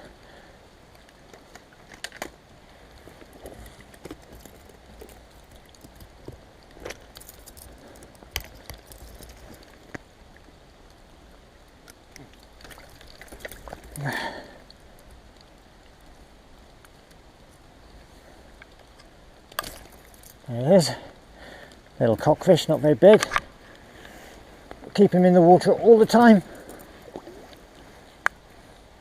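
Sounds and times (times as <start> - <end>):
faint river water: 0.0 - 29.0
fishing gear clicking and clinking: 3.1 - 10.0, 12.1 - 14.2, 18.9 - 20.4.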